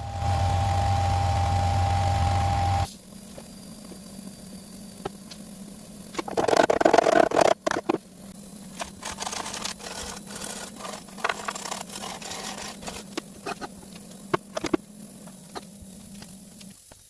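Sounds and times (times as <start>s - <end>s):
steady low hum: 0.0s - 6.2s
scraping and rubbing: 8.7s - 13.8s.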